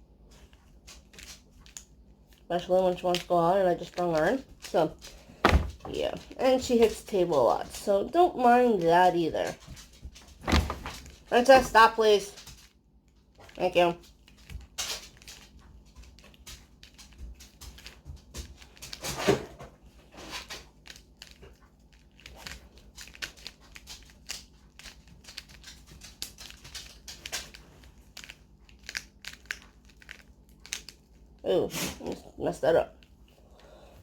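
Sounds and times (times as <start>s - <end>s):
puzzle cube clicking and rattling: 20.7s - 31.3s.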